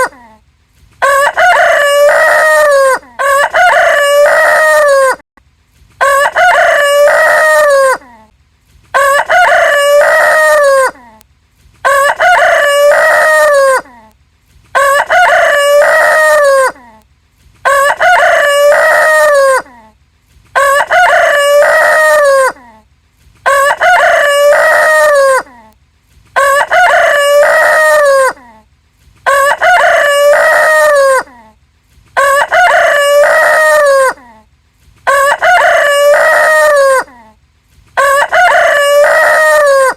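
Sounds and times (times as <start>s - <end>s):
rooster crowing: 1.0s - 5.2s, 6.0s - 8.0s, 8.9s - 11.0s, 11.8s - 13.9s, 14.8s - 16.8s, 17.6s - 19.7s, 20.6s - 22.6s, 23.5s - 25.6s, 26.4s - 28.4s, 29.3s - 31.3s, 32.2s - 34.3s, 35.0s - 37.1s, 38.0s - 39.9s.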